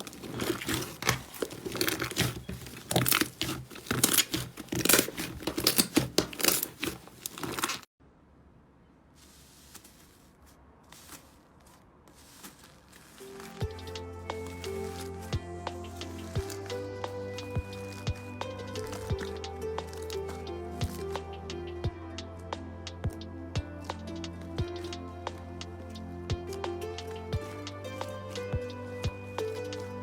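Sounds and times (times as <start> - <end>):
slime crackling and popping: 0.0 - 7.9.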